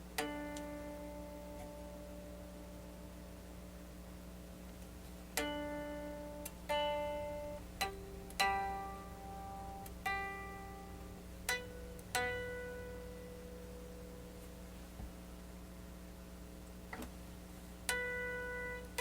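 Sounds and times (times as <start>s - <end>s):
unplugged electric guitar strings plucked: 4.7s - 15.2s, 17.9s - 19.0s.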